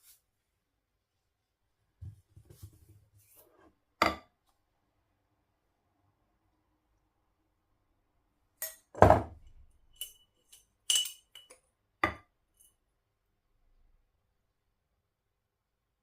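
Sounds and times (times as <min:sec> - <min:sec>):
utensils and dishes clinking: 0:09.9 - 0:11.6.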